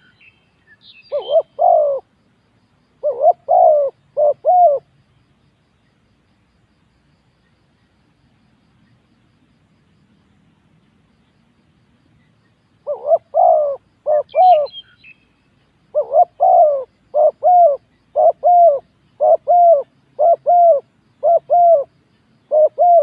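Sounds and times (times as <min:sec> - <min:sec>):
dove cooing: 0:01.1 - 0:02.1, 0:03.0 - 0:04.9, 0:12.8 - 0:14.8, 0:15.9 - 0:21.9, 0:22.5 - 0:23.0.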